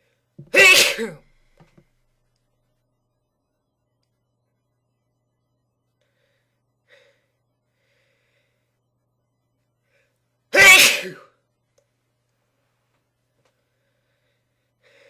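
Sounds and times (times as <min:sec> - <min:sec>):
person's breathy inhalations: 0:06.0 - 0:08.8, 0:13.6 - 0:15.0.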